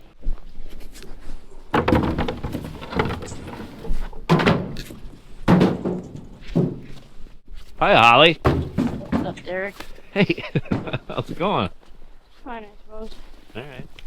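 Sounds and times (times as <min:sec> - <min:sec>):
heavy thuds and knocks: 0:01.7 - 0:07.2, 0:08.4 - 0:09.8, 0:10.5 - 0:11.3.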